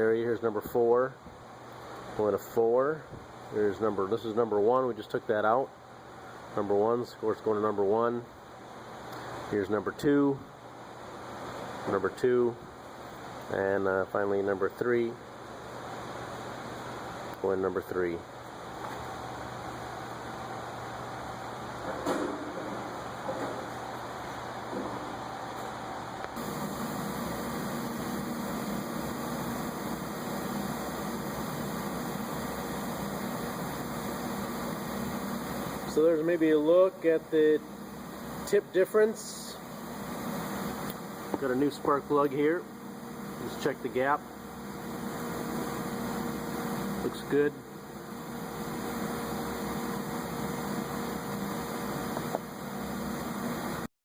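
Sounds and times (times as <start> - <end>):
machinery hum and hiss: 0.0 - 53.9.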